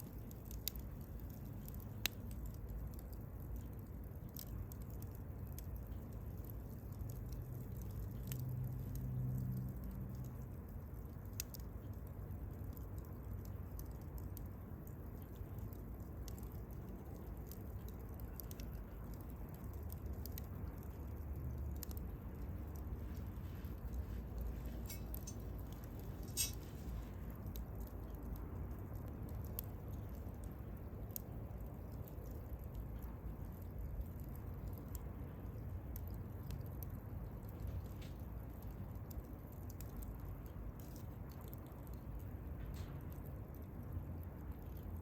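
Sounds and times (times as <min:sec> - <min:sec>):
campfire crackling: 0:00.0 - 0:45.0
fire popping: 0:00.0 - 0:45.0
low rumble of fire: 0:00.0 - 0:45.0
low hum: 0:20.4 - 0:27.5.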